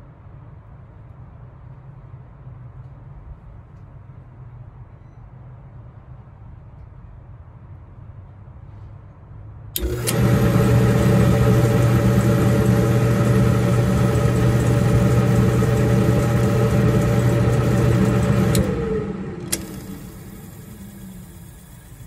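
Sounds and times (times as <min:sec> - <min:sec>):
dryer motor humming: 0:09.8 - 0:22.0
motor click: 0:09.8 - 0:22.0
motor winding down: 0:09.8 - 0:22.0.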